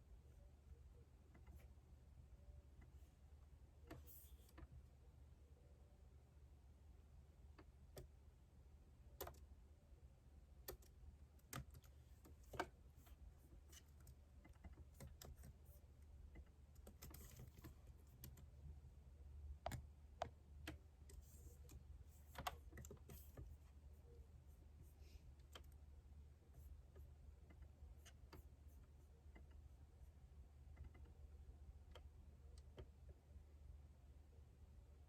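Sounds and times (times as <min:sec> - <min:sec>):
soft low hum: 0:00.0 - 0:35.0
quiet keyboard typing: 0:09.1 - 0:09.5, 0:10.5 - 0:24.5, 0:25.2 - 0:33.4.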